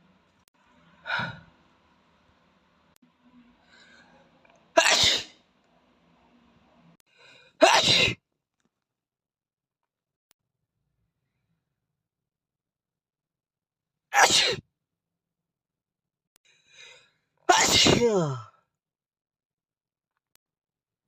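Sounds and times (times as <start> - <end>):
boy sneezing: 4.8 - 5.3, 7.6 - 8.2, 14.2 - 14.6, 17.5 - 18.4.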